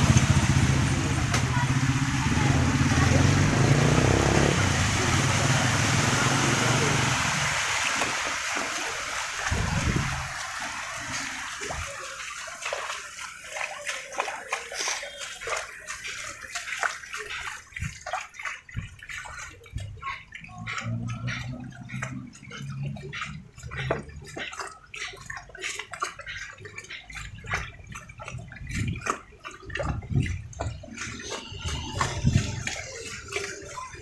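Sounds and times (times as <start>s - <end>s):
passing vehicle: 0.0s - 7.8s
water dripping and splashing: 0.0s - 34.0s.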